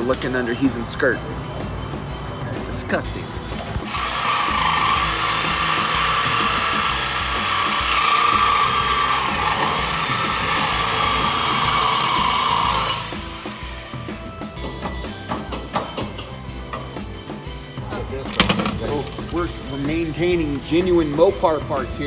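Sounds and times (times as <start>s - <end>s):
power tool hissing whine: 0.0s - 22.0s.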